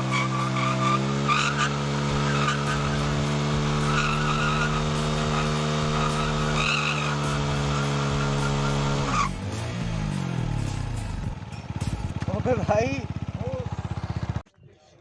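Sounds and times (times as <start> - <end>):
tyre squealing: 0.0 - 9.4
motorcycle engine revving high: 0.0 - 14.4.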